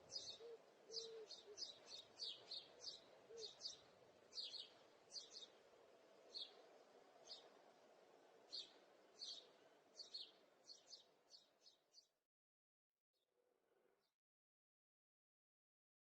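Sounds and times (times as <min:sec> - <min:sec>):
low steady background hum: 0:00.0 - 0:11.9.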